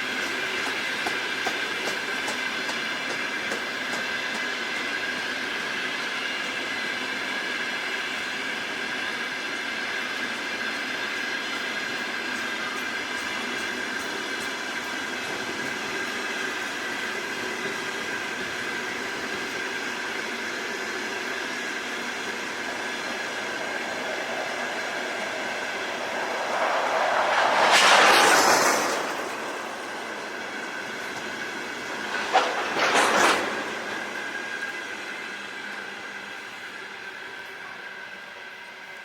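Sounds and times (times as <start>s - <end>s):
rush of noise: 22.1s - 34.9s
sharp clacks: 23.3s - 34.4s
freight wagons rolling on rails: 27.8s - 34.9s.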